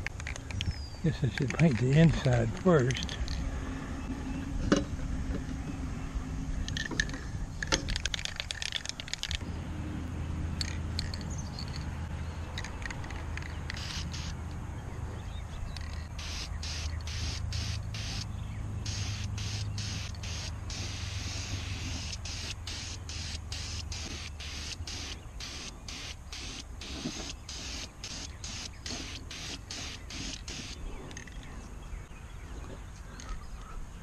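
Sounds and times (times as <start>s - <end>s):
steady low hum: 0.0s - 34.0s
spray paint can hissing: 13.7s - 14.4s, 15.9s - 30.8s.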